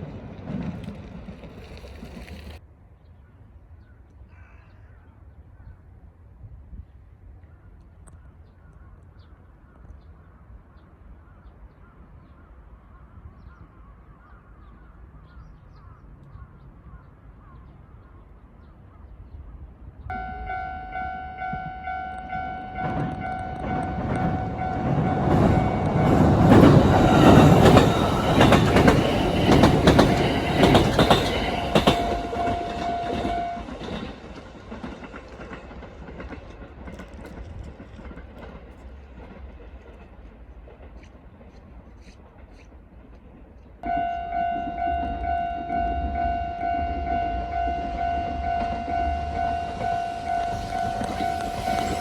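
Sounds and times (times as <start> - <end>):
train wheels clattering over rail joints: 0.0 - 2.6, 23.0 - 43.4
crossing alarm ringing: 20.1 - 34.2, 43.8 - 52.0.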